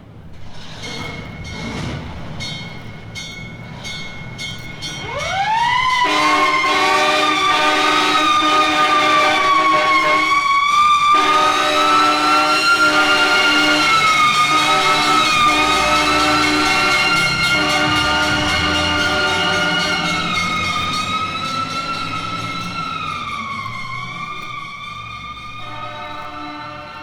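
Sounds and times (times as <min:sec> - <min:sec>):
fire engine bell clanging: 0:00.0 - 0:27.0
mechanical siren wailing: 0:04.9 - 0:27.0
low steady horn tone: 0:05.9 - 0:22.0, 0:25.4 - 0:27.0.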